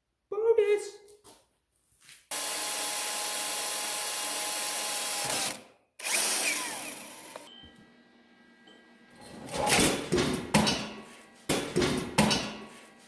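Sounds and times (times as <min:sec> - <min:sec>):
power tool running: 0:02.3 - 0:07.5.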